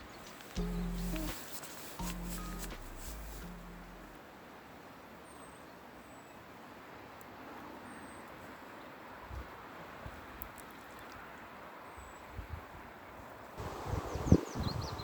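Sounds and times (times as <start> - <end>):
high falling chirps: 0.0 - 4.2
faint outdoor hiss: 0.0 - 15.0
soft low thumps: 0.6 - 4.2.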